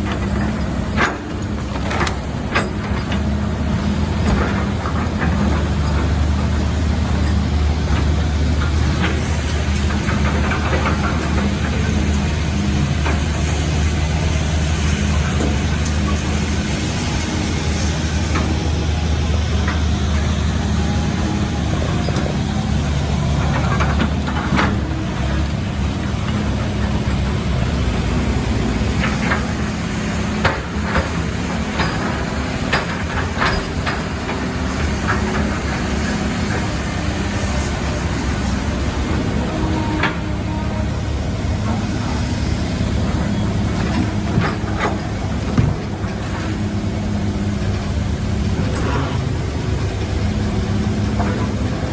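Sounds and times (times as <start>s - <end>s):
heavy vehicle engine humming: 0.0s - 51.9s
sharp knocks and clanks: 43.8s - 46.5s.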